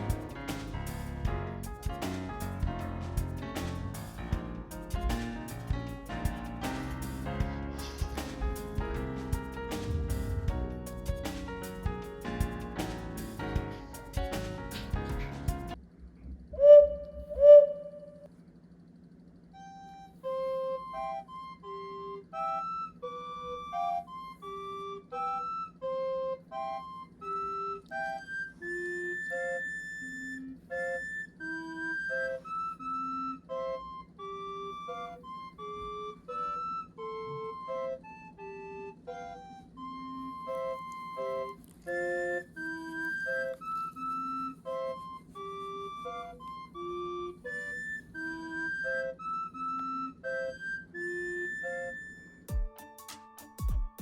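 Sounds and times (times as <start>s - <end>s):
flute-like melody: 0.0s - 15.8s, 16.5s - 18.3s, 19.6s - 54.0s
low drone: 0.0s - 18.3s.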